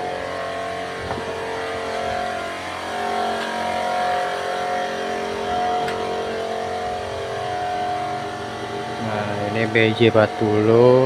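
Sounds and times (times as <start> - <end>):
motor vehicle engine running: 0.0 - 11.0.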